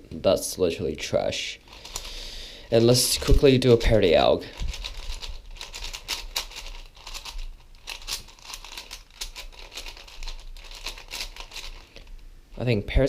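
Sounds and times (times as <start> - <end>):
puzzle cube clicks and scrapes: 1.7 - 2.2, 2.8 - 12.2.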